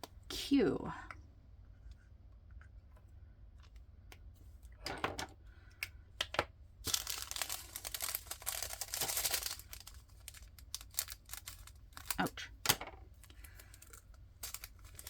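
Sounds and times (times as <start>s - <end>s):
plastic bags crinkling: 6.8s - 12.5s, 13.1s - 15.0s.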